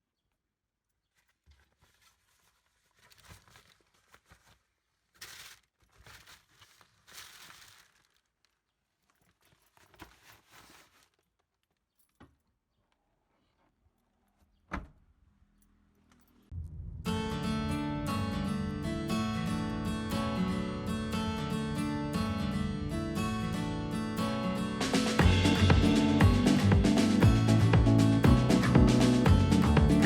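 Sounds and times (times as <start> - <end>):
packaging rustling and crinkling: 1.0 - 12.2.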